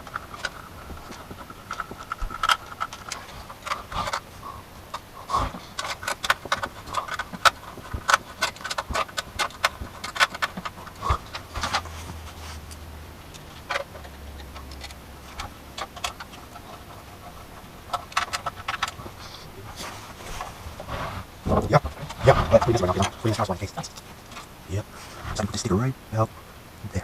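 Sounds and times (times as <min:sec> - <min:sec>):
low hum: 0:00.0 - 0:27.0
computer hardware clicks and knocks: 0:04.9 - 0:11.9, 0:12.7 - 0:19.2.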